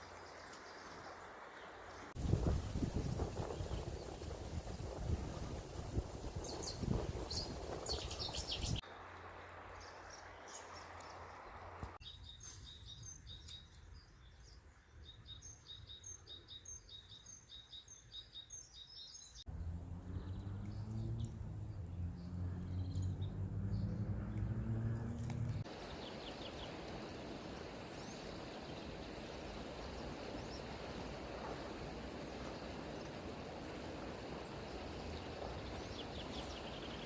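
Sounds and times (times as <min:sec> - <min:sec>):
small birds chirping: 0:00.0 - 0:08.8, 0:09.7 - 0:37.0
low hum rising in pitch: 0:19.5 - 0:25.7.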